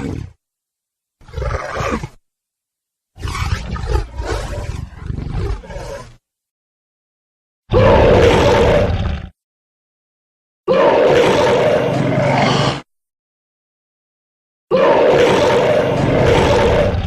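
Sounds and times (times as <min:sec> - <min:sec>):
creature roar: 0:00.0 - 0:00.4, 0:07.7 - 0:09.3, 0:10.7 - 0:12.9, 0:14.7 - 0:17.0.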